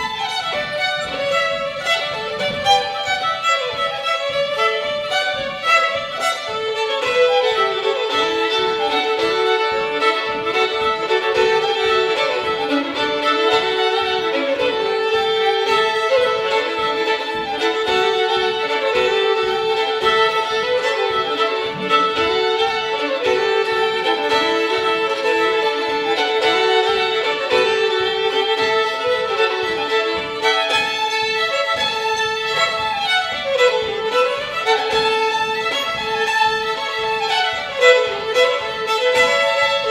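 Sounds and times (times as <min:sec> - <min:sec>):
fiddles playing a fast reel: 0:00.0 - 0:39.9.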